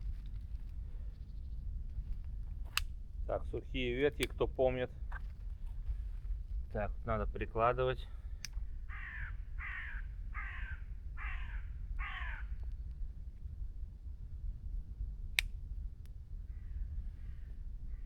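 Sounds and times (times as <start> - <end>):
sharp click: 2.7 - 3.0
crow cawing: 8.9 - 12.6.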